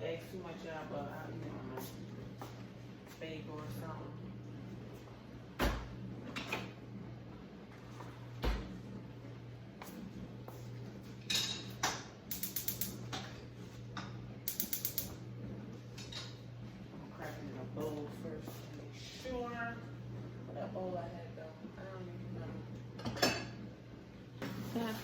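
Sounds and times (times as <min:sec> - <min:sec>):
steady low hum: 0:00.0 - 0:25.0
scattered clicks: 0:12.3 - 0:13.0, 0:14.5 - 0:15.2
sharp rapid ticks: 0:12.3 - 0:13.0, 0:14.5 - 0:15.2.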